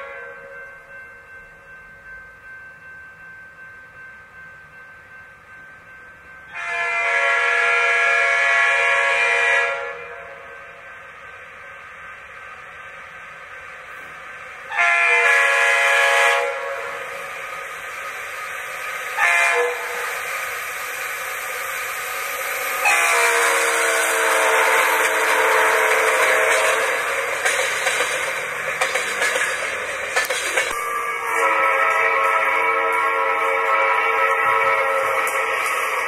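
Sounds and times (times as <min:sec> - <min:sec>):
locomotive air horn chord: 0:00.0 - 0:00.5, 0:06.5 - 0:10.8, 0:14.7 - 0:17.4, 0:19.2 - 0:20.2, 0:22.8 - 0:27.1, 0:30.7 - 0:36.0
train noise: 0:00.0 - 0:36.0.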